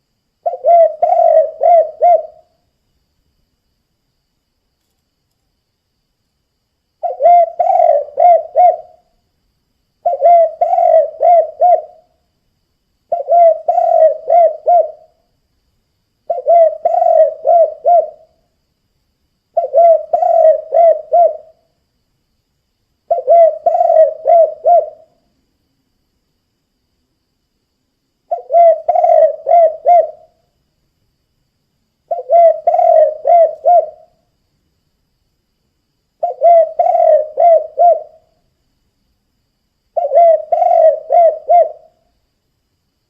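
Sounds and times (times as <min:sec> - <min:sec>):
dove cooing: 0:00.4 - 0:02.6, 0:07.0 - 0:09.1, 0:10.0 - 0:12.1, 0:13.1 - 0:15.2, 0:16.3 - 0:18.4, 0:19.6 - 0:21.6, 0:23.1 - 0:25.1, 0:28.3 - 0:30.4, 0:32.1 - 0:34.2, 0:36.2 - 0:38.3, 0:40.0 - 0:42.0.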